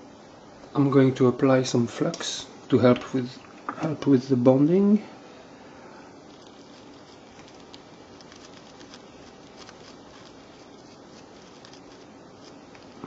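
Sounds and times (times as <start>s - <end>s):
flux sizzling under soldering iron: 6.1s - 13.0s.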